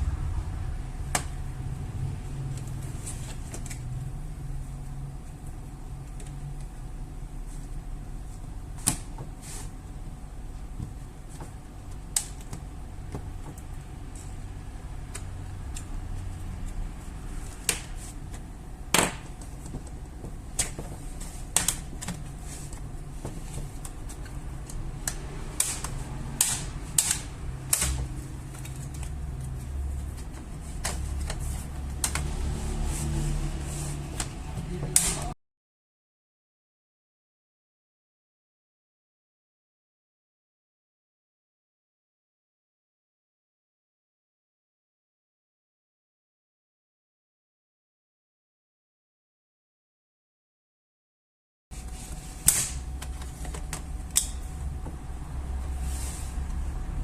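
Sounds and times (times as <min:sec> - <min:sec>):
low steady hum: 0:00.0 - 0:35.4.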